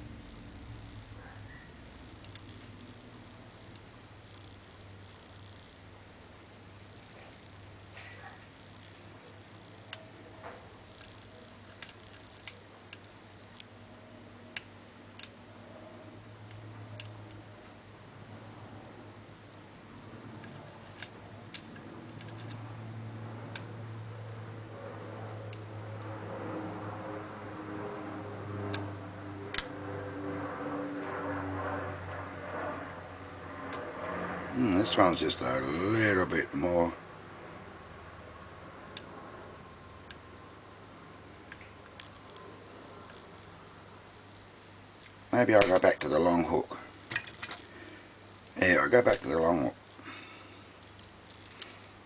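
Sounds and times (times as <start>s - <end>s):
low steady hum: 0.0s - 52.0s
lock pick metallic ticks: 20.4s - 22.6s.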